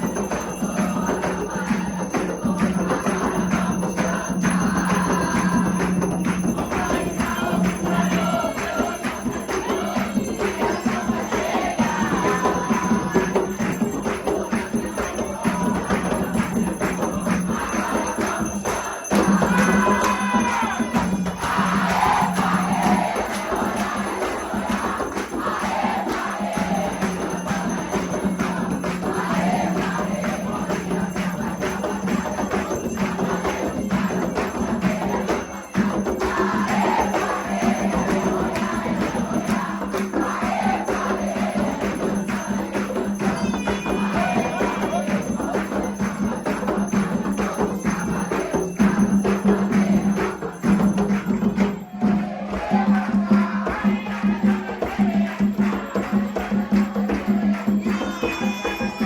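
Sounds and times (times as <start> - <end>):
percussion with jingling: 0.0 - 59.0
voices singing: 0.0 - 59.0.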